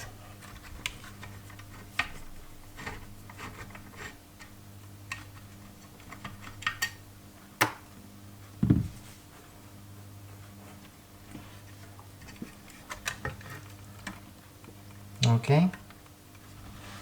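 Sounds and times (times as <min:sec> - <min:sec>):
steady low hum: 0:00.0 - 0:17.0
low thump: 0:08.6 - 0:09.0.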